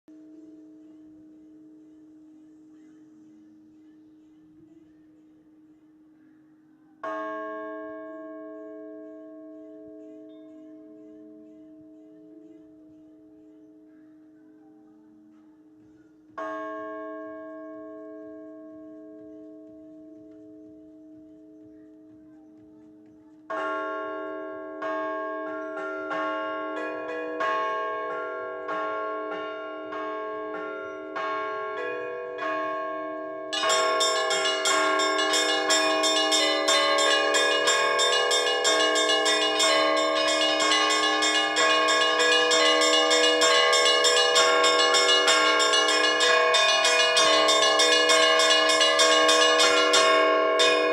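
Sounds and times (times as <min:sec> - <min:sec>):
church bells pealing: 0:07.0 - 0:13.3, 0:16.4 - 0:20.8, 0:23.5 - 0:50.9
deep church bell stroke: 0:24.1 - 0:50.9
single church bell strokes: 0:31.8 - 0:50.9.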